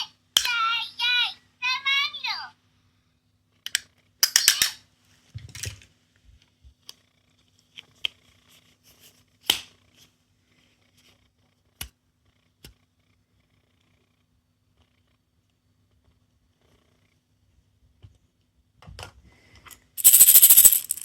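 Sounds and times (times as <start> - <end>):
plastic toy clicks and taps: 3.7 - 4.8.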